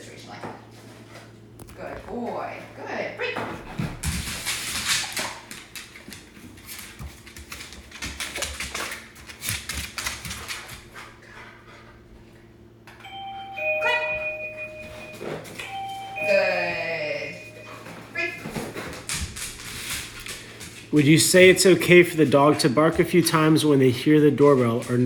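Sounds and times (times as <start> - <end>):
doorbell chime: 13.0 - 18.1.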